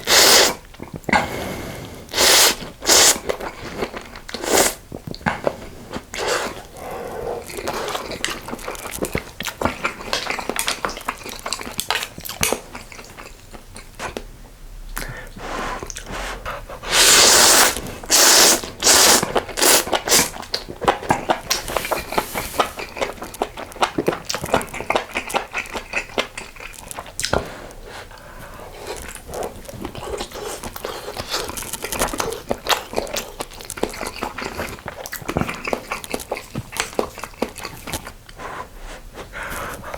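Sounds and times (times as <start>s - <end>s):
loud slurps: 0.0s - 3.4s, 4.3s - 4.8s, 15.0s - 23.0s
chewing and lip-smacking: 2.2s - 14.3s, 15.8s - 39.9s.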